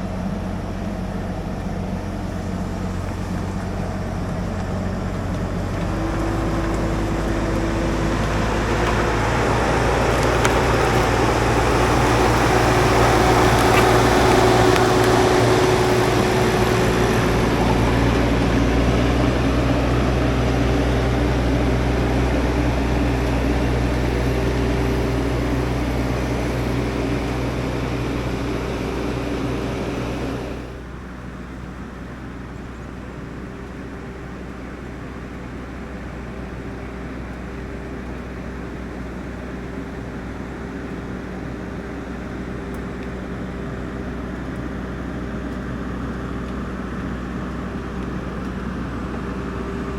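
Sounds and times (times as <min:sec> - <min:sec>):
engine humming: 0:00.0 - 0:49.9
chainsaw cutting log: 0:05.7 - 0:19.5.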